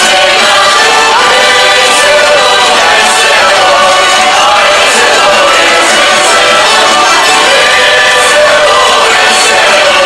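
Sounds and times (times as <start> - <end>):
folk ensemble playing: 0.0 - 10.0
people singing: 0.0 - 10.0.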